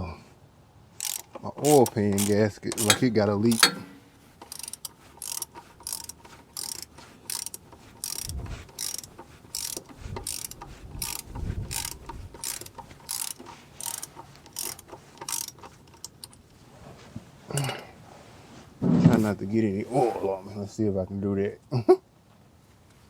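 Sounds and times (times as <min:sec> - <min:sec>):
socket ratchet clicking: 0:01.0 - 0:16.2.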